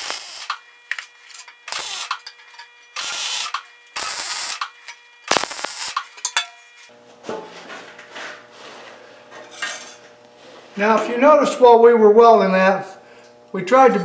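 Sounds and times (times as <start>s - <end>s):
welder bursts: 0.0s - 6.9s.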